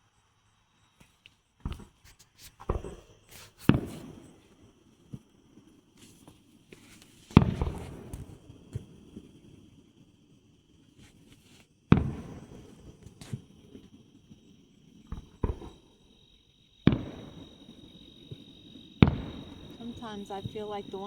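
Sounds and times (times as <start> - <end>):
crickets chirping: 0.0 - 8.3, 12.2 - 21.0
fireworks booming: 2.6 - 4.6, 7.3 - 9.1, 11.9 - 13.8, 15.0 - 16.0, 16.8 - 21.0.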